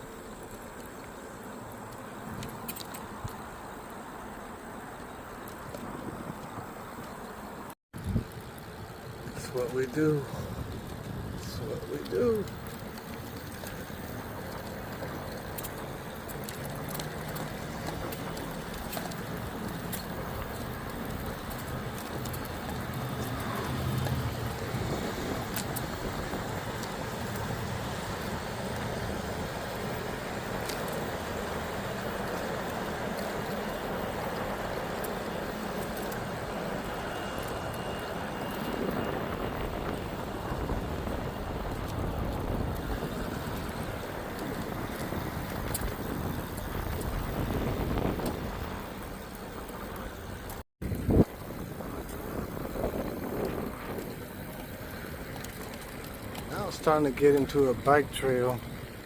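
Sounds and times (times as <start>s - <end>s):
faint ticks: 0.0s - 7.3s, 8.2s - 59.0s
bicycle tyres rolling: 0.0s - 59.0s
wind on microphone: 8.0s - 8.4s, 22.8s - 27.8s, 37.8s - 49.8s, 50.4s - 54.6s.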